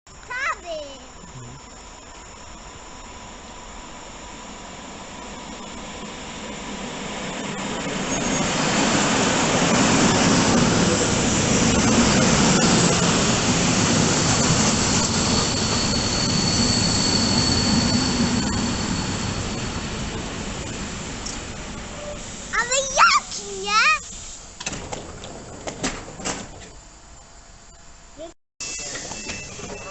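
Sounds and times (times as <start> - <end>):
high steady wheel squeal: 2.1 - 22.9, 28.6 - 29.9
train rumbling past: 2.3 - 27.1.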